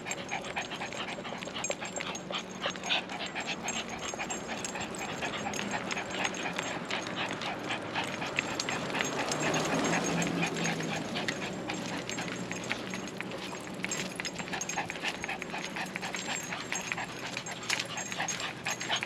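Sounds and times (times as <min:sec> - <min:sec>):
dog panting: 0:00.0 - 0:19.0.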